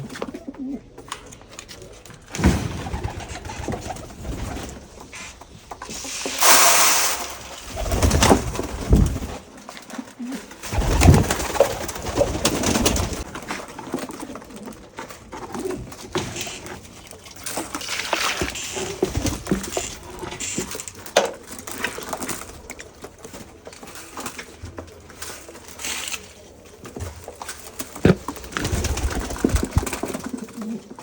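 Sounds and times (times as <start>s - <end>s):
pigeons cooing: 0.0s - 2.1s, 7.6s - 17.5s, 27.7s - 31.0s
rustling noise: 3.0s - 13.6s.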